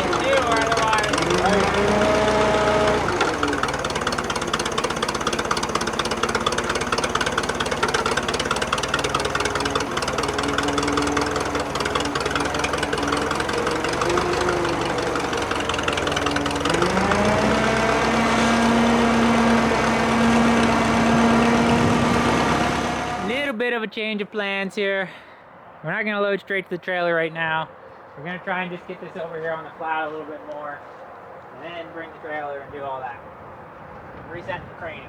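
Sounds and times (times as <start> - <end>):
crane engine running under load: 0.0 - 23.3.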